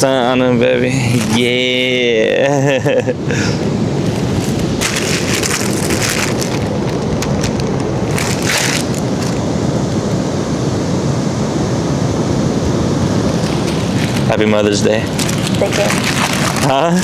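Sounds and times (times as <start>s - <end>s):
crackling bursts: 1.0s - 2.0s, 3.6s - 10.2s, 12.6s - 17.0s
wind buffeting microphone: 3.1s - 17.0s.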